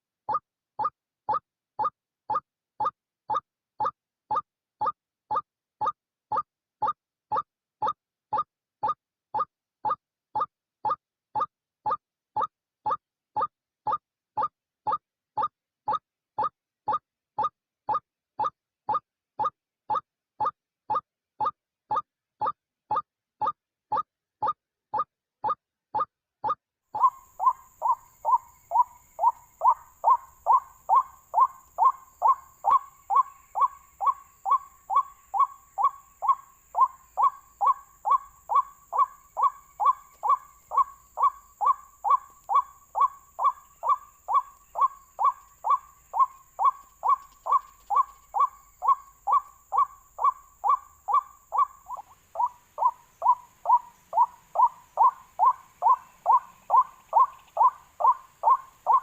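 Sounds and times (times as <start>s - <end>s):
waterhen call: 26.9s - 59.0s.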